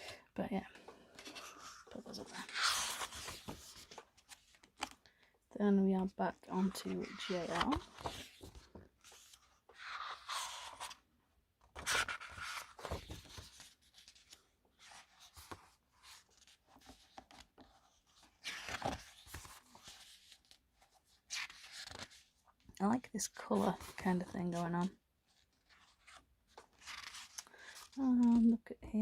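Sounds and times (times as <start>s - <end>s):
book pages turning: 0.6s - 5.0s, 6.6s - 11.0s, 11.6s - 22.3s, 23.3s - 28.5s.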